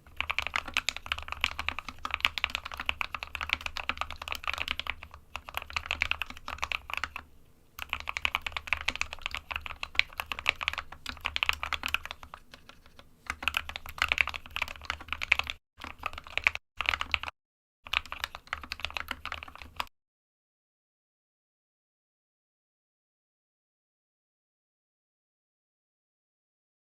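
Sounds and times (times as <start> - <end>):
computer keyboard typing: 0.0 - 19.9.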